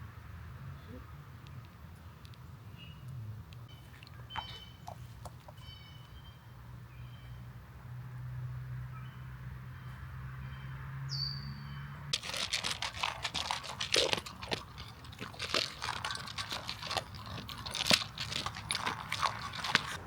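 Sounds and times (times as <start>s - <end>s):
crunching and crackling clicks: 12.2s - 20.0s.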